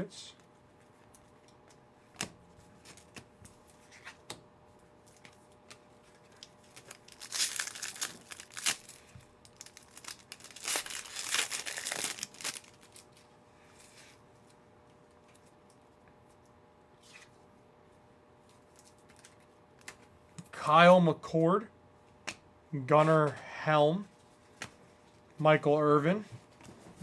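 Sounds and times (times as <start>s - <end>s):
foil wrapper tearing and crinkling: 6.3s - 13.2s.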